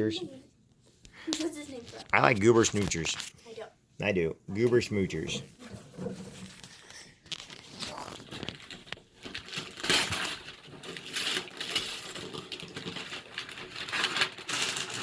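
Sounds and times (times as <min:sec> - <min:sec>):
wrapping paper crinkling: 0:06.4 - 0:15.0.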